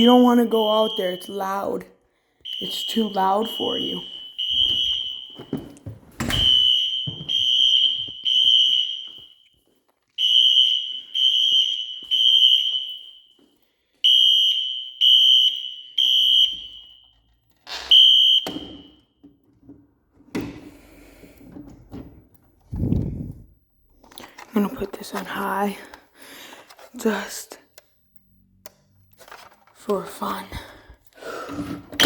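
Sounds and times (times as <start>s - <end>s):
fire alarm horn blasts: 0.0s - 1.8s, 2.4s - 9.6s, 10.2s - 19.2s.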